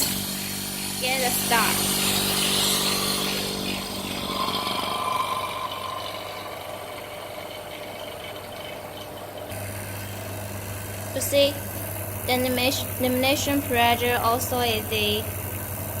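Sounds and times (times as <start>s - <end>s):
machine motor hum: 0.0s - 12.3s
quiet machine running sound: 0.0s - 16.0s
brief higher tone: 3.5s - 7.5s.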